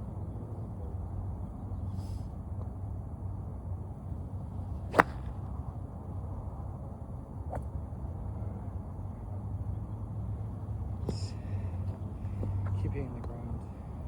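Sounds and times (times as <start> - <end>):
golf club striking ball: 4.8 - 5.9.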